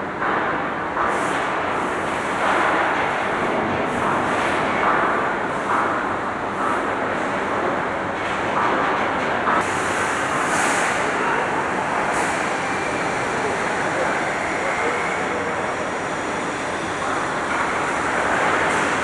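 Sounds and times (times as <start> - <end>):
steady machine noise: 9.6 - 19.0.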